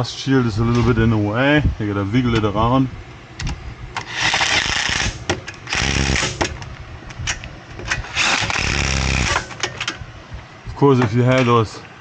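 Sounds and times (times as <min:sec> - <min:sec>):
cordless power tool driving bolts: 0:04.0 - 0:06.7, 0:07.3 - 0:10.0.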